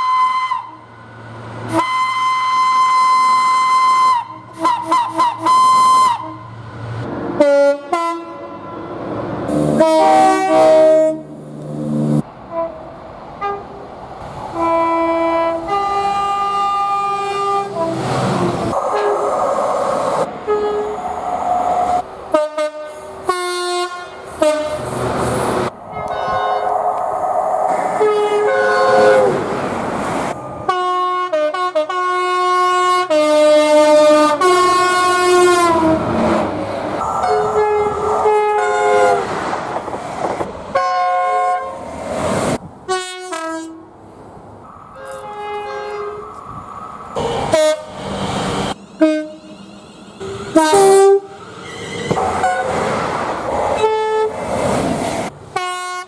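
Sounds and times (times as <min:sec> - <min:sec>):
trains passing: 0:00.0 - 0:56.0
train horn chords: 0:01.7 - 0:06.5, 0:07.4 - 0:08.9, 0:09.5 - 0:13.8, 0:14.6 - 0:19.3, 0:20.3 - 0:21.0, 0:22.3 - 0:24.9, 0:28.0 - 0:29.5, 0:30.6 - 0:36.2, 0:37.1 - 0:39.2, 0:42.9 - 0:43.9, 0:45.0 - 0:46.4, 0:47.4 - 0:48.1, 0:49.0 - 0:49.6, 0:50.2 - 0:51.4, 0:55.5 - 0:56.0.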